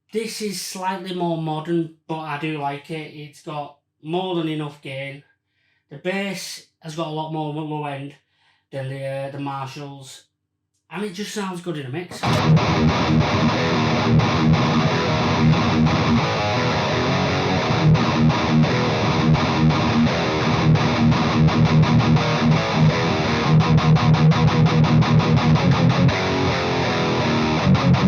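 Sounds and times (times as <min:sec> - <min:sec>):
distorted electric guitar chugging: 0:12.1 - 0:28.0.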